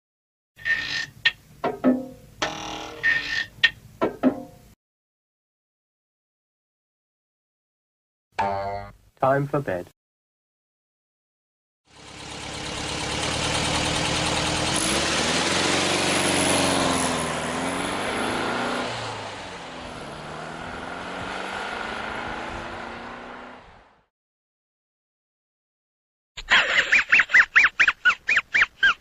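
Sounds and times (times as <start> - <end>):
vehicle engine revving: 11.9 - 24.1.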